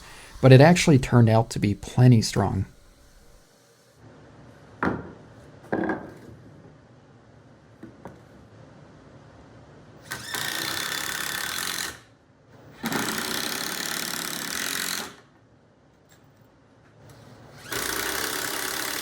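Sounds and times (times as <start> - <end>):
power driver driving screws: 12.8 - 15.2, 17.5 - 19.0.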